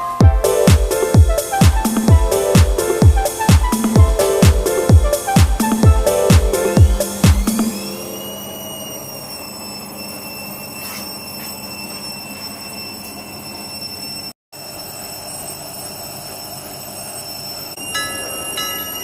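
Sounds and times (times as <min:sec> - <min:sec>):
machine whirring: 0:00.0 - 0:12.1
high-pitched whine: 0:00.0 - 0:19.0.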